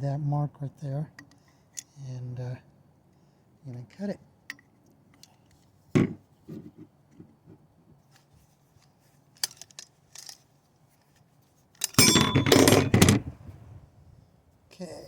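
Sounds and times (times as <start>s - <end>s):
metallic clinking and rattling: 11.8s - 13.7s.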